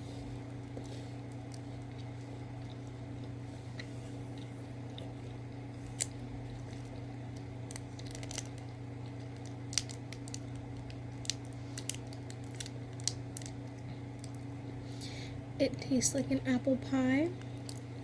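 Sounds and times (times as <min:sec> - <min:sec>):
steady low hum: 0:00.0 - 0:18.0
snack being eaten: 0:00.5 - 0:15.0
snack packaging rustling: 0:05.7 - 0:15.0.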